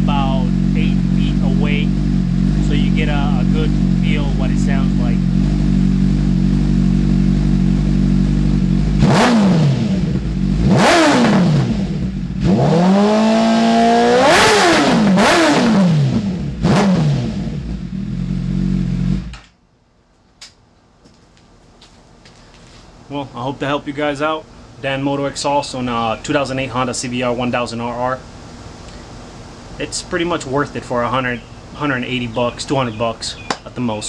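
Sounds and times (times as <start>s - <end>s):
motorcycle engine revving: 0.0s - 19.5s.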